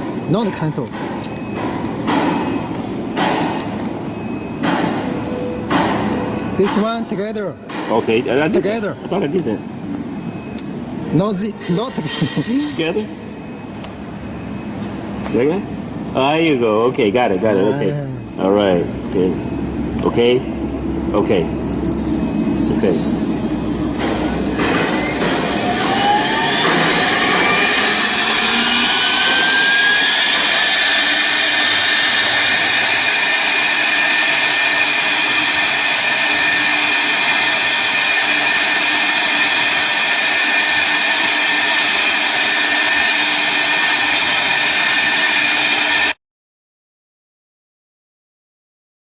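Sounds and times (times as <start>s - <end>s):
router spindle motor whine: 22.3s - 46.2s.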